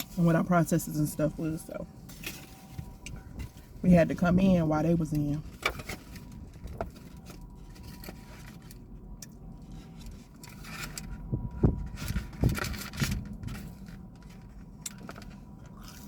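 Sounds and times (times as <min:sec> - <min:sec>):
steady low hum: 0:00.0 - 0:16.0
food wrapping rustling: 0:05.5 - 0:08.9, 0:09.6 - 0:16.0.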